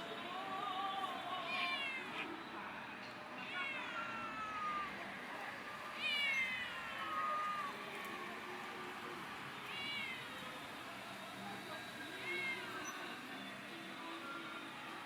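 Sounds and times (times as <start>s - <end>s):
cats meowing: 6.0s - 7.7s.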